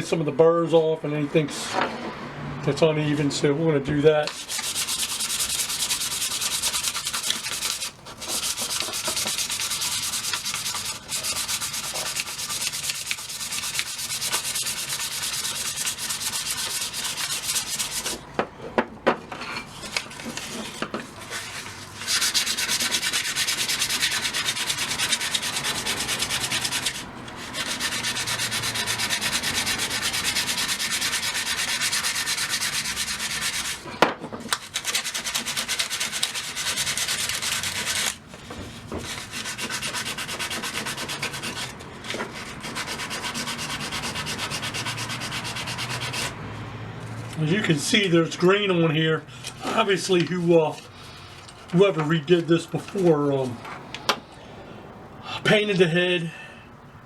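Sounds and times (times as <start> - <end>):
sandpaper rubbing on wood: 4.2 - 18.2, 19.7 - 33.9, 34.5 - 46.4.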